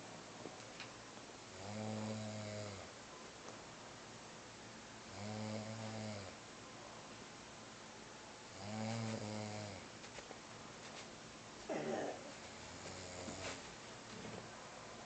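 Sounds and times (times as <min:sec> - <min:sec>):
person snoring: 0:01.6 - 0:02.9, 0:05.1 - 0:06.4, 0:08.5 - 0:09.9.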